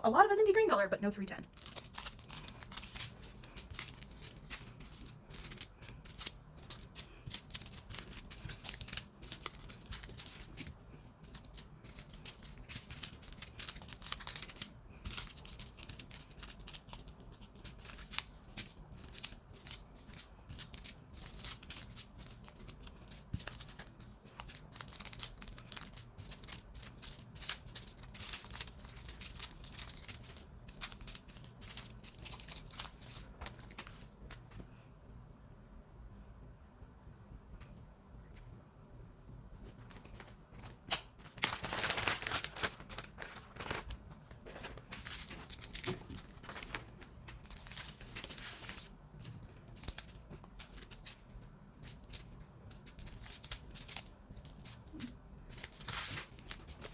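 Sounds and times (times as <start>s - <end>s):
plastic bags crinkling: 1.4s - 10.7s, 41.2s - 48.9s.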